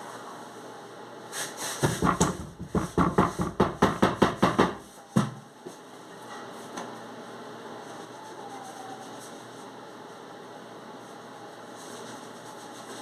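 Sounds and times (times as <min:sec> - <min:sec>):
knock: 0:01.8 - 0:05.4.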